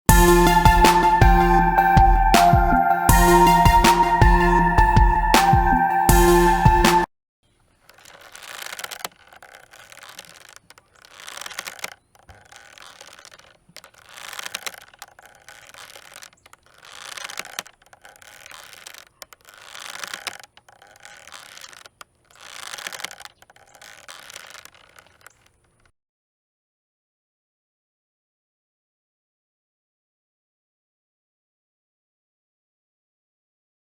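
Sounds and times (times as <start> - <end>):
rope creaking: 7.5 - 25.9.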